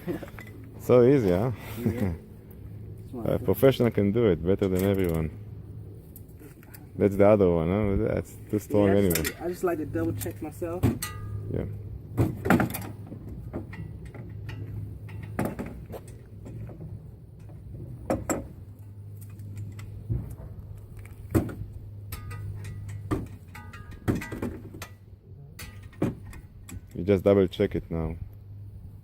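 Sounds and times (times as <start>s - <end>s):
low hum: 0.0s - 29.0s
socket wrench clinking on metal: 8.9s - 9.5s, 22.0s - 25.0s, 25.6s - 27.0s.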